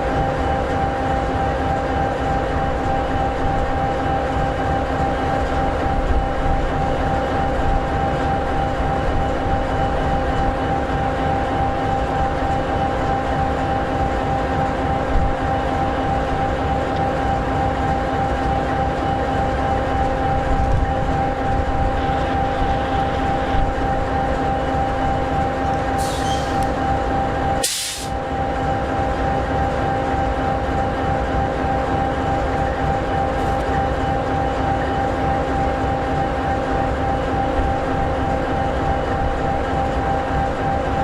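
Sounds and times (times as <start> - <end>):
diesel locomotive idling: 0.0 - 41.0
short air hisses: 26.0 - 26.7, 27.6 - 28.2.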